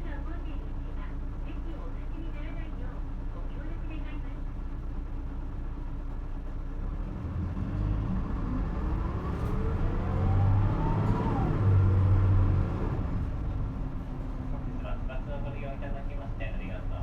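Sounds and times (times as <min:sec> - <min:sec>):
bus diesel engine accelerating: 0:00.0 - 0:17.0
rising engine whine: 0:06.8 - 0:16.1.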